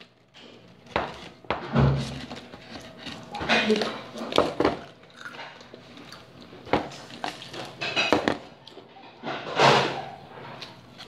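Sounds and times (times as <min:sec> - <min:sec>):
crisps crunching: 0:00.0 - 0:08.8.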